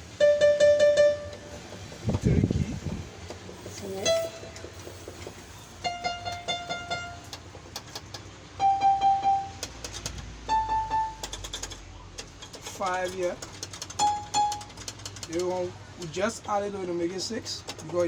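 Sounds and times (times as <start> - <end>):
electronic keyboard notes: 0.0 - 7.6, 8.5 - 11.7, 13.8 - 15.0.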